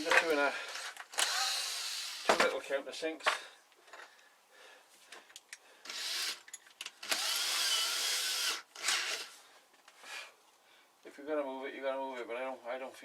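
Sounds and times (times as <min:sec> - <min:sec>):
power drill cutting wood: 0:01.2 - 0:02.4, 0:05.9 - 0:06.4, 0:07.0 - 0:09.3.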